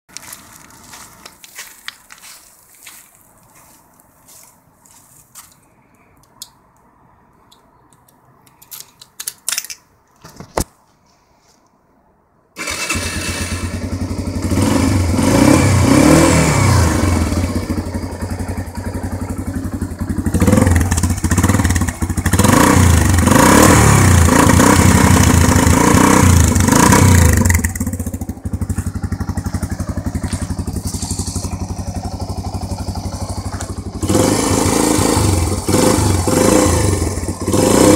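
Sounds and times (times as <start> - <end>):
motorcycle engine revving and idling: 12.6 - 37.9.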